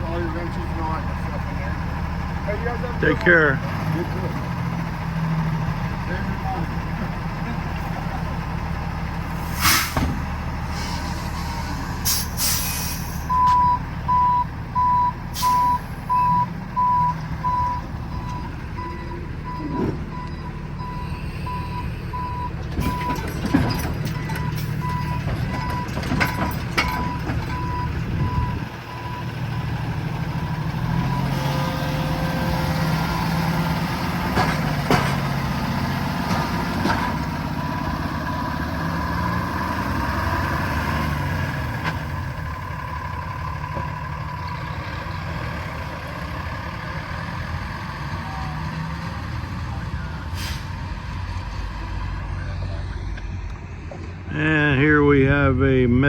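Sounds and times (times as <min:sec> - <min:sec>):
diesel engine running: 0:00.0 - 0:56.0
backup alarm beeping: 0:13.3 - 0:23.3.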